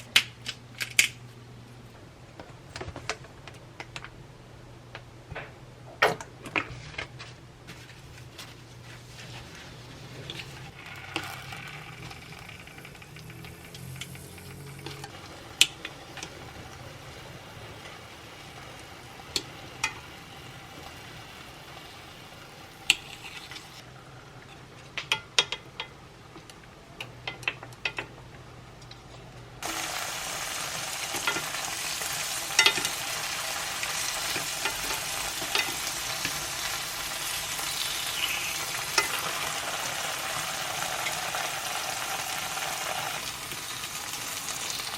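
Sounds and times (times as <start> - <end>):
hot oil sizzling: 9.2 - 24.0, 29.6 - 44.9
utensils clicking and tapping: 10.2 - 17.0, 24.9 - 28.2, 28.9 - 41.4.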